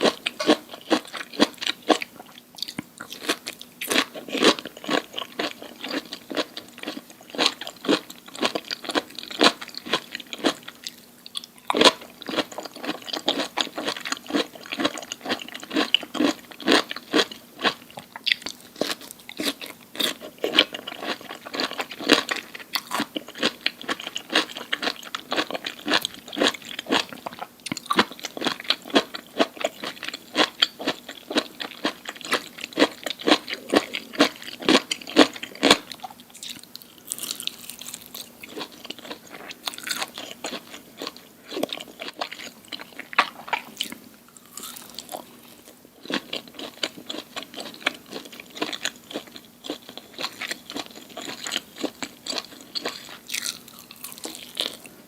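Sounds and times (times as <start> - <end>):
chewing crunchy food: 0.0 - 55.0.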